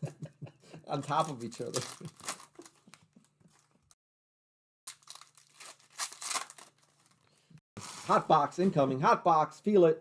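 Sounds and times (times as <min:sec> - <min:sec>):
card packaging tearing and crinkling: 0:01.0 - 0:02.8, 0:04.9 - 0:07.2, 0:07.8 - 0:08.3.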